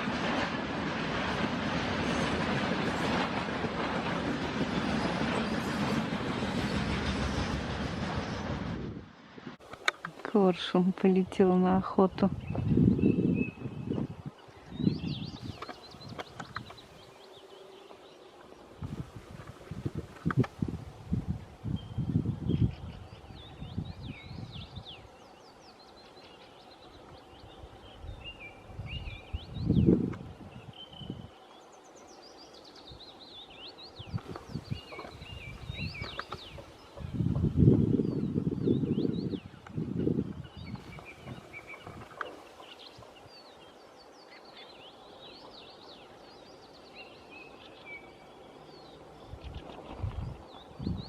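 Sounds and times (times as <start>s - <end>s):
faint outdoor background noise: 0.0s - 51.0s
songbirds chirping: 9.6s - 20.7s, 21.5s - 51.0s.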